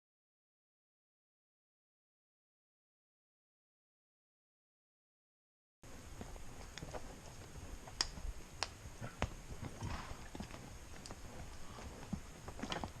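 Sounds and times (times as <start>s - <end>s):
horse hooves clip-clopping: 5.9s - 13.0s.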